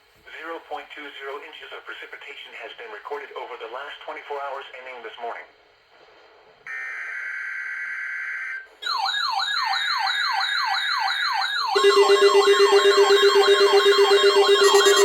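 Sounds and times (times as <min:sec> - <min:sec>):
siren-like alert sweep: 0:08.8 - 0:15.0
pulsing low beep: 0:11.8 - 0:15.0
steady alert tone: 0:11.8 - 0:15.0
buzzy digital data screech: 0:13.4 - 0:15.0.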